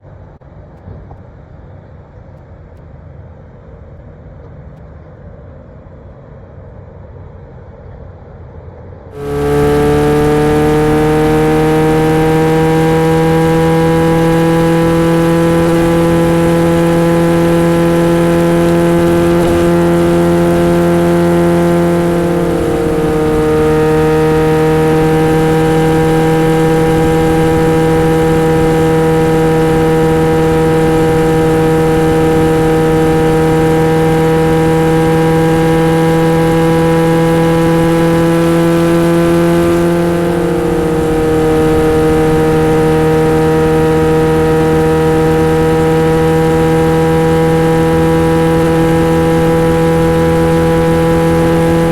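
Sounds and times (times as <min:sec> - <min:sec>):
motorcycle engine running: 0:09.2 - 0:51.9.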